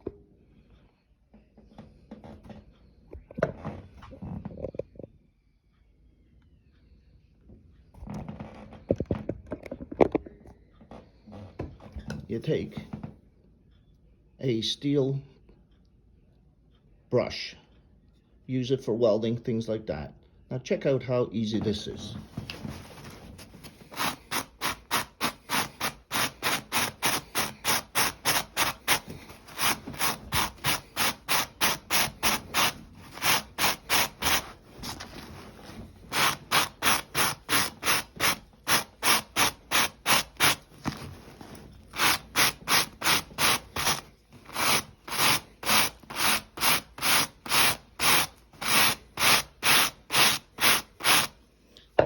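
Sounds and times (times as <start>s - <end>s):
wire brush scraping velcro: 23.6s - 51.4s.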